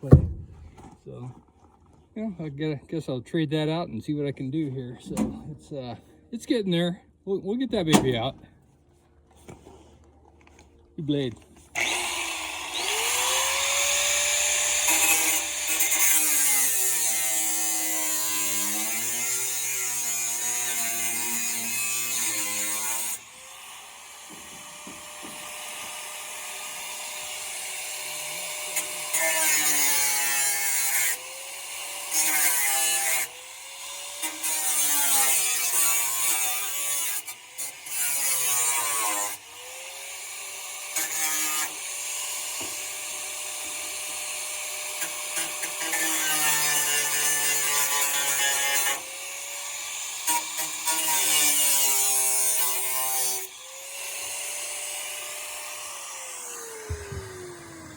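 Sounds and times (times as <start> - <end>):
power tool cutting metal: 11.8 - 57.9.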